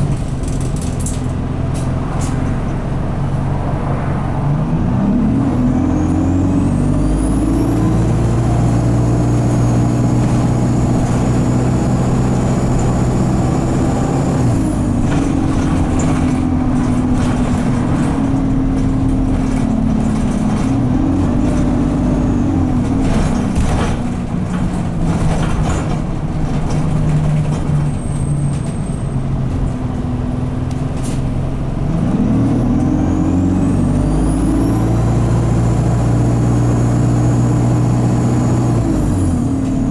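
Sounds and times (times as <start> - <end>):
bus engine revving hard: 0.0 - 39.9
high turbo squeal: 5.7 - 15.2.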